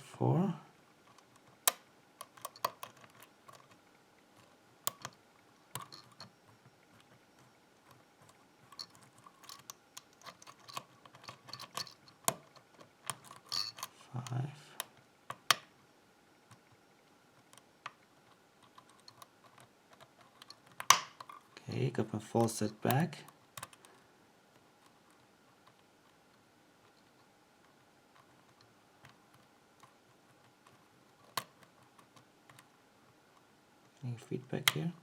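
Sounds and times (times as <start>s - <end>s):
small metallic clicks: 1.0s - 3.8s, 4.4s - 15.7s, 17.4s - 21.6s, 22.4s - 32.7s
light scraping in a lock: 8.6s - 14.4s.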